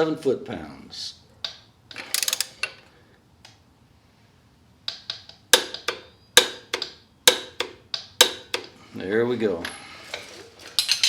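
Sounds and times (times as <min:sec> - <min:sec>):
torque wrench ratchet clicks: 0:01.9 - 0:02.7.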